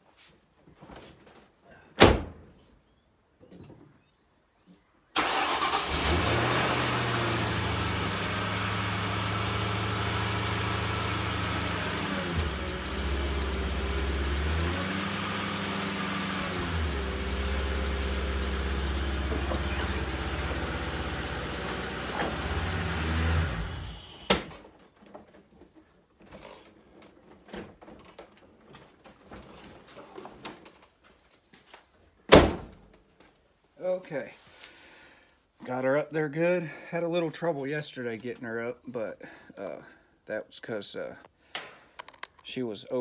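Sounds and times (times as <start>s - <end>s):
car engine running at low speed: 6.0s - 24.3s.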